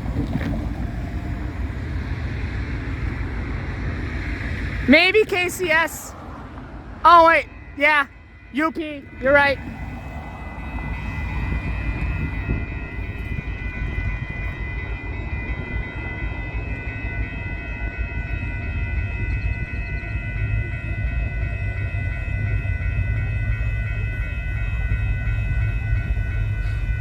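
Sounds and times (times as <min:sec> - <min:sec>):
freight train rumbling: 0:00.0 - 0:27.0
high-pitched ringing tones: 0:07.1 - 0:27.0.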